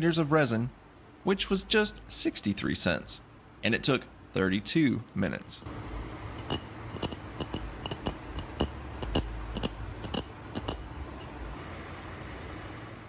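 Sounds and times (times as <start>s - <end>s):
low steady hum: 0.0s - 13.0s
sharp clicks and taps: 6.3s - 11.3s.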